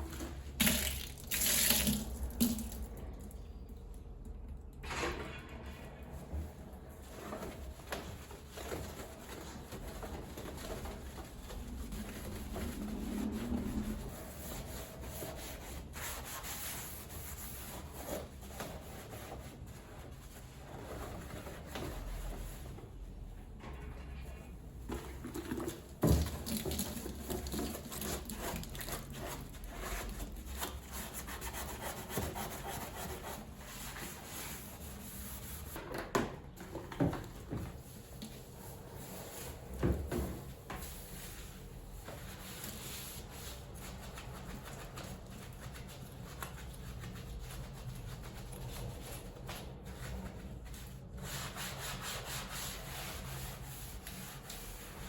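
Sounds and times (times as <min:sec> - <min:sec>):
rubbing and scrubbing: 0:06.9 - 0:22.8, 0:25.4 - 0:35.8, 0:40.3 - 0:55.0.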